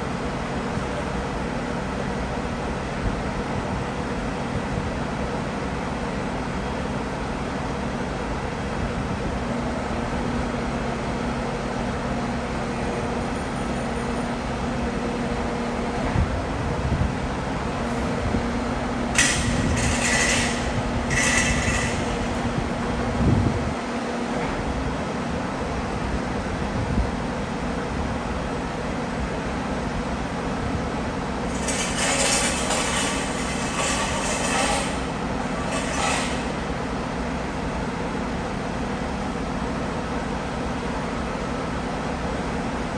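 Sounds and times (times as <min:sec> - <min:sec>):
heavy machine droning: 0:17.5 - 0:23.7.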